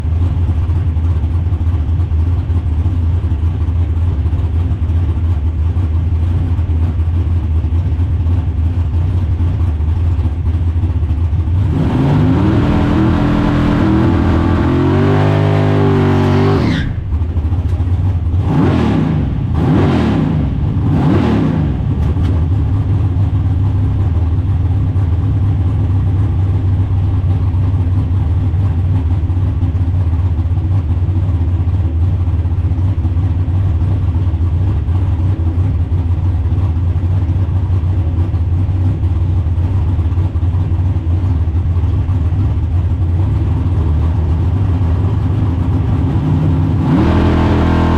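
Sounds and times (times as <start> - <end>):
car engine revving: 11.6 - 22.8, 44.6 - 47.9.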